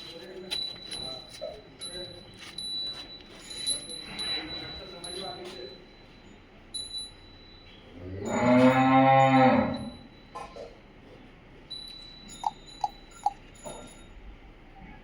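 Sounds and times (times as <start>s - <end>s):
cow mooing: 8.0s - 9.9s.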